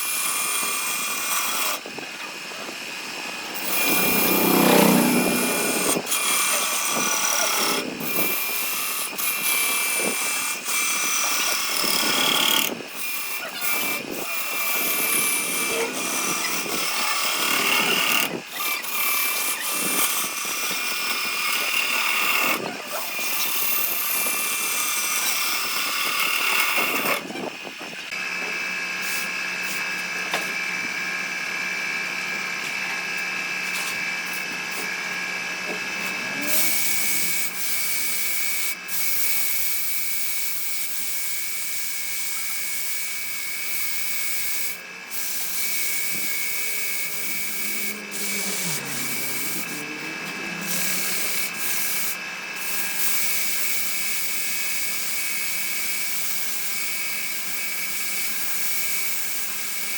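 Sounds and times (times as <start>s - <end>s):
power tool motor whine: 0.0s - 59.9s
wood cutting noise: 0.0s - 59.9s.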